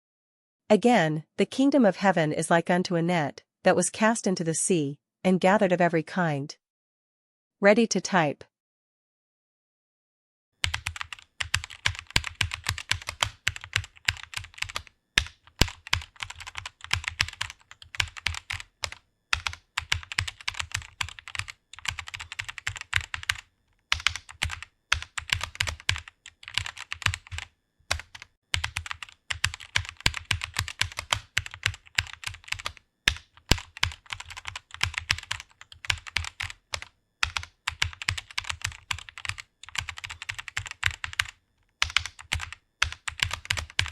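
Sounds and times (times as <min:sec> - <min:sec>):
rapid keyboard typing: 0:10.6 - 0:43.9.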